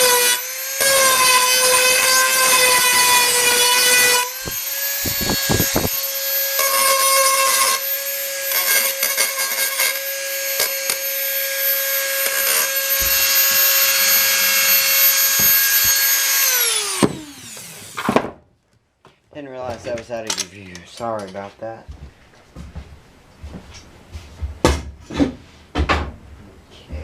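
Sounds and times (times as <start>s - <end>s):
rotary tool whine: 0.0s - 18.1s
grinding scraping on metal edge: 2.6s - 6.0s.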